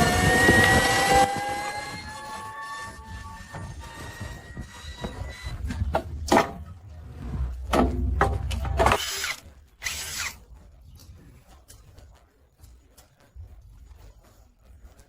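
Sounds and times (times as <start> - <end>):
electric motor whine: 0.0 - 5.7
low rumble: 1.2 - 8.8.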